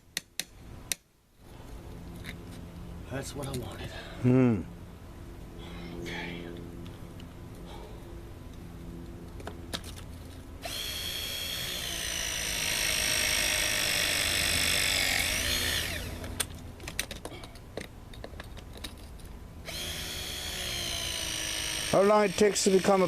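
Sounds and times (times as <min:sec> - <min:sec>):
power tool motor whining: 0:10.6 - 0:16.5, 0:19.6 - 0:23.0.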